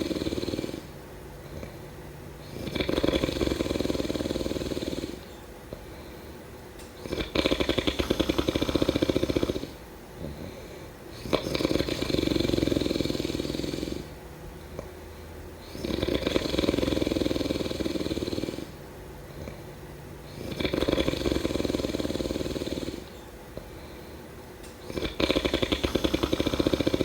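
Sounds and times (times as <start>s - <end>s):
person snoring: 0.0s - 0.9s, 2.4s - 5.3s, 7.0s - 14.2s, 15.6s - 18.8s, 20.3s - 23.2s, 24.8s - 27.0s
quiet breathing: 0.0s - 27.0s.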